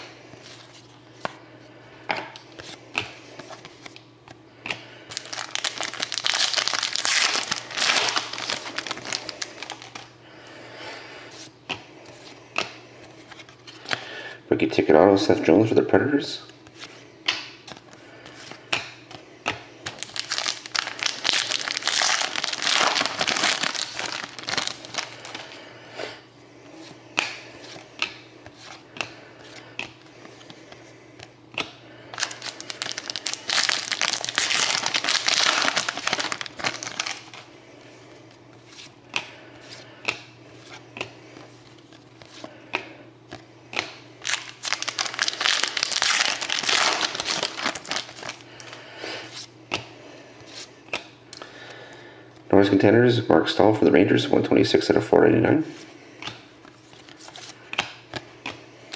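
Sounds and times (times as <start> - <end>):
wrappers crinkling and rustling: 5.1 - 10.1, 19.9 - 25.5, 32.1 - 37.5, 44.2 - 49.5.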